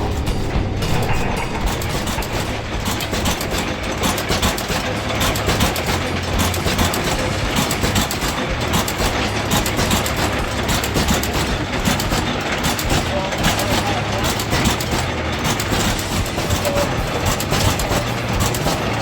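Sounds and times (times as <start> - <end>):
low hum: 0.0 - 14.2
machinery clattering: 0.0 - 19.0.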